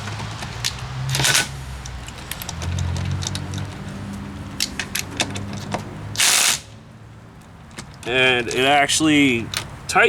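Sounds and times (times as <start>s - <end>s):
tool handling clicks and rattles: 0.0s - 6.7s.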